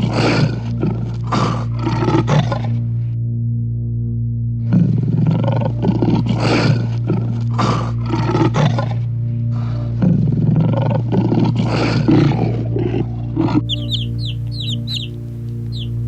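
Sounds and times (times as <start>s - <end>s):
steady low hum: 13.2s - 16.0s
high short peeping calls: 13.7s - 16.0s.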